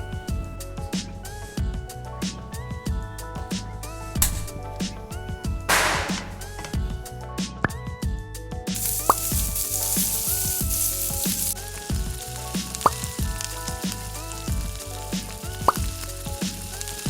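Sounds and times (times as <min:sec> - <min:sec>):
background music with steady beat: 0:00.0 - 0:17.0
food sizzling in hot oil: 0:08.8 - 0:17.0.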